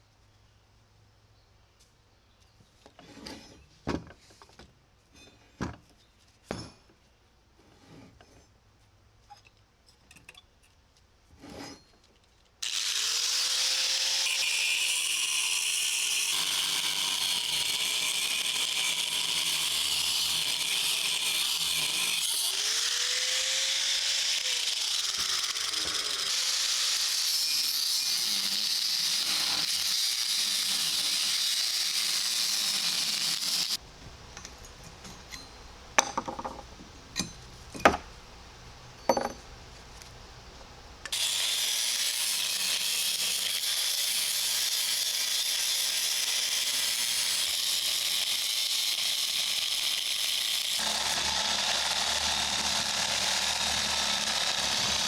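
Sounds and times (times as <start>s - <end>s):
power tool grinding steel: 12.6s - 33.8s, 41.1s - 55.0s.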